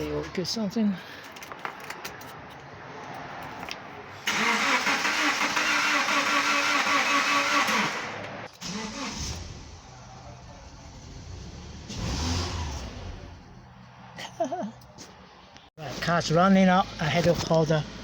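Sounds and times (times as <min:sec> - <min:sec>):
starter cranking engine: 0:04.2 - 0:09.5
low engine rumble: 0:09.4 - 0:11.9.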